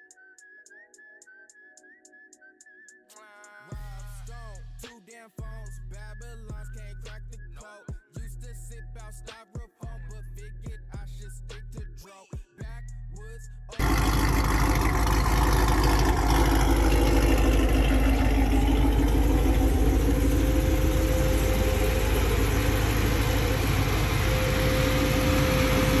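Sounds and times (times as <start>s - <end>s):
car engine idling: 13.8s - 26.0s
steady high tone: 13.8s - 26.0s.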